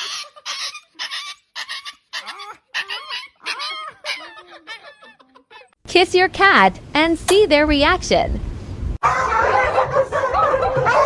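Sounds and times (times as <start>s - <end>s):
dog whimpering: 0.0s - 5.8s.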